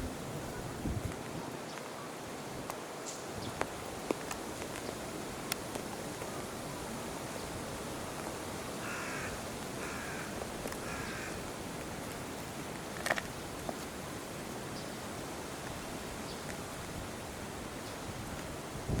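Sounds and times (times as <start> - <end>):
outdoor background hiss: 0.0 - 19.0
steady background noise: 0.0 - 19.0
bird calling: 8.8 - 11.5.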